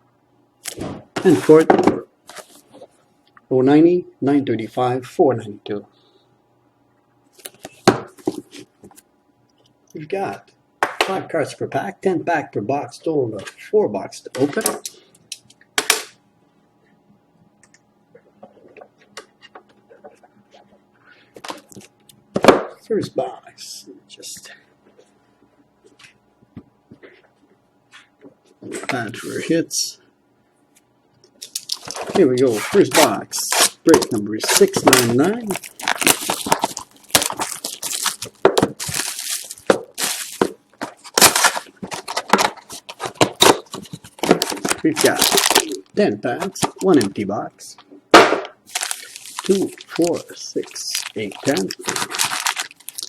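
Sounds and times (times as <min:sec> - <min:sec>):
plastic wrap and cardboard tearing: 0:31.4 - 0:45.8, 0:48.7 - 0:53.0.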